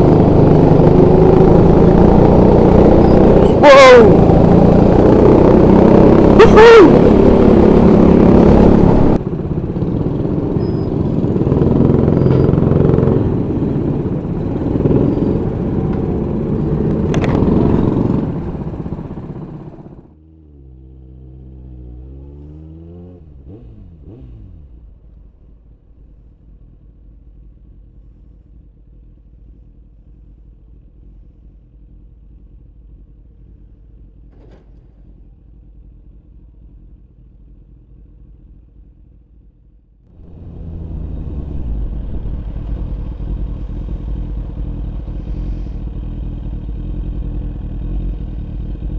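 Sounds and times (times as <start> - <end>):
go-kart engine: 0.0 - 28.2, 40.1 - 48.9
motorcycle engine: 0.0 - 48.9
wind noise: 40.2 - 45.5.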